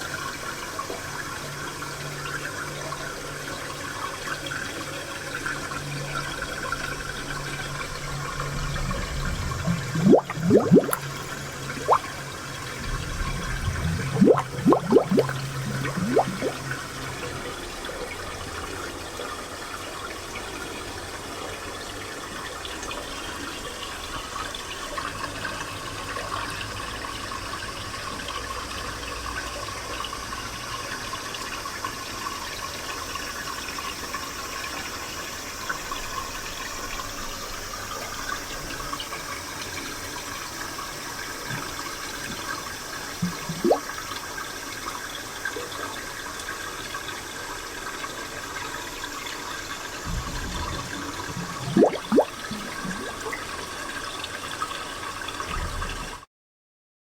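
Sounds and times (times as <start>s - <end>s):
spring water flowing and splashing: 6.7s - 18.7s, 38.6s - 44.6s, 47.6s - 54.1s.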